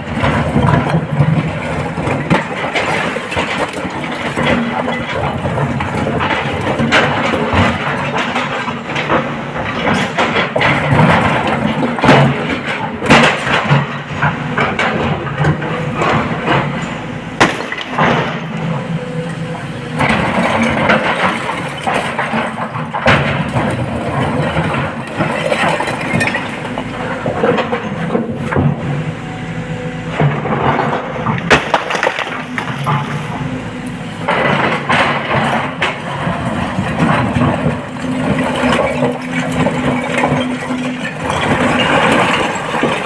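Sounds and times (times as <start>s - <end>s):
excavator diesel engine running: 0.0s - 43.0s
load crashing into truck body: 17.4s - 18.4s, 30.3s - 33.3s.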